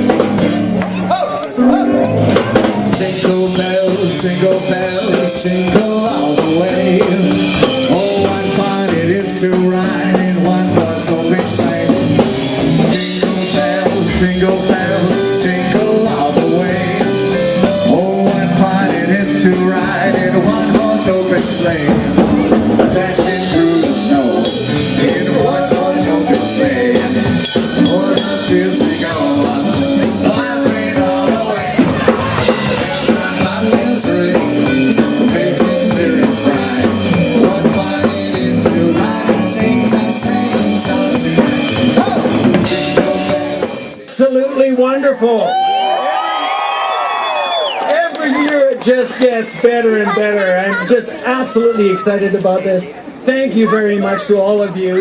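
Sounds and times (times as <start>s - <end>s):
drum kit: 0.0s - 44.1s
person singing: 0.0s - 44.1s
band music: 0.0s - 55.0s.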